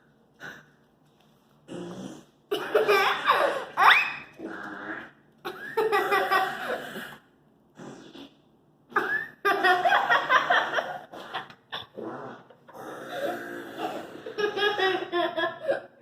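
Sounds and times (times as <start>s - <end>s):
fart sound effects from a speaker: 1.7s - 2.5s, 4.4s - 5.2s, 6.7s - 8.4s, 11.2s - 14.2s
children laughing: 2.5s - 4.4s, 5.4s - 6.9s, 9.0s - 12.0s, 14.2s - 16.0s.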